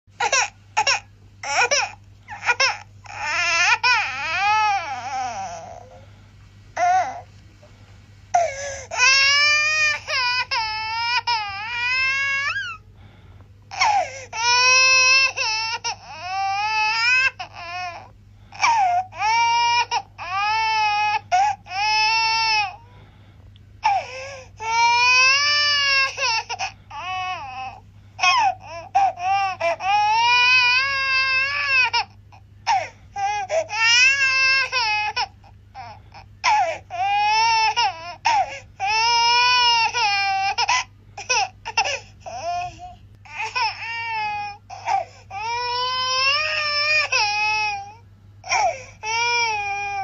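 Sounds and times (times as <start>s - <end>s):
infant crying: 0.2s - 6.1s, 6.8s - 7.3s, 8.4s - 12.8s, 13.7s - 22.9s, 23.8s - 50.0s
infant gasping: 4.9s - 6.2s, 8.4s - 9.0s, 12.4s - 16.1s, 23.8s - 24.7s, 48.5s - 49.1s.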